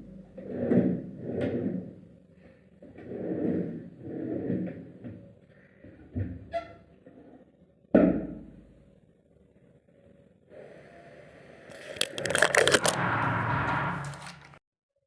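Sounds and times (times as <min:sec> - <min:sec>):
rough scraping with crackling: 0:11.7 - 0:13.1.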